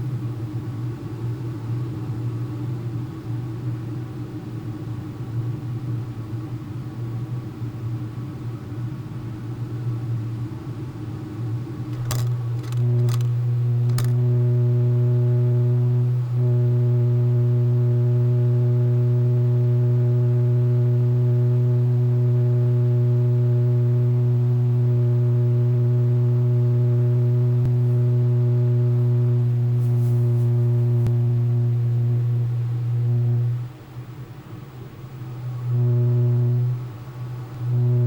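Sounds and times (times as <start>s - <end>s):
loud low-pitched hum: 9.4s - 38.0s.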